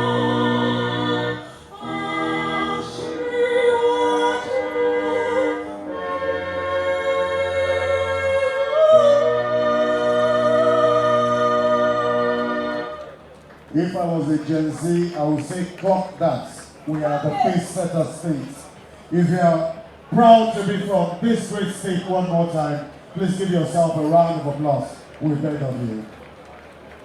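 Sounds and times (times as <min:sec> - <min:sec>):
voices singing long notes: 0:00.0 - 0:13.3.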